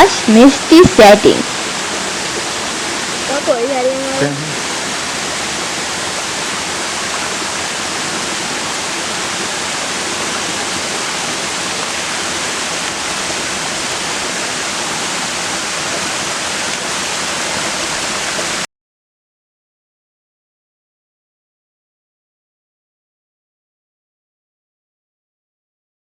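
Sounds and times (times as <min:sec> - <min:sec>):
waterfall rushing: 0:00.0 - 0:18.7.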